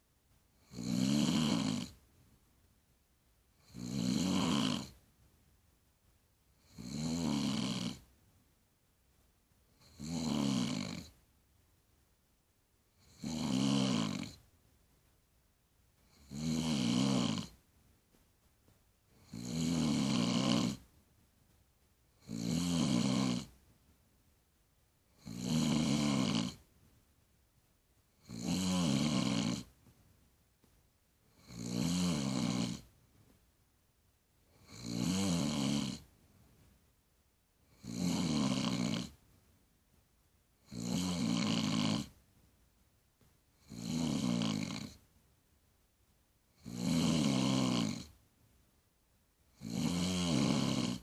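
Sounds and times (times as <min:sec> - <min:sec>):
woman snoring: 0:00.6 - 0:02.0, 0:03.6 - 0:05.0, 0:06.6 - 0:08.0, 0:09.8 - 0:11.1, 0:13.0 - 0:14.4, 0:16.1 - 0:17.6, 0:19.2 - 0:20.8, 0:22.2 - 0:23.5, 0:25.2 - 0:26.6, 0:28.2 - 0:29.7, 0:31.3 - 0:32.9, 0:34.6 - 0:36.0, 0:37.7 - 0:39.2, 0:40.6 - 0:42.1, 0:43.6 - 0:45.0, 0:46.6 - 0:48.1, 0:49.5 - 0:51.0.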